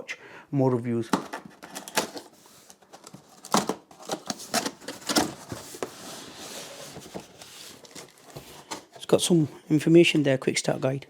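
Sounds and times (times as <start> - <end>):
cardboard box crinkling and knocking: 1.1 - 9.2
packaging scraping rustle: 1.5 - 9.3.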